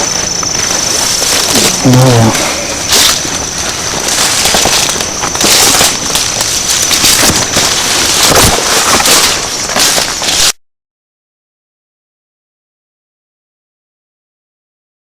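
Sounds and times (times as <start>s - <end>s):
crackling and rustling in brush: 0.0s - 10.6s
loud steady hiss: 0.0s - 10.6s.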